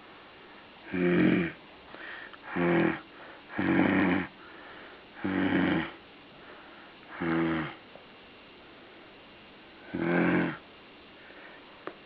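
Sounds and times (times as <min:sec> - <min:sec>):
dog snoring: 0:00.8 - 0:01.6, 0:02.4 - 0:04.4, 0:05.2 - 0:06.0, 0:07.1 - 0:07.8, 0:09.8 - 0:10.6.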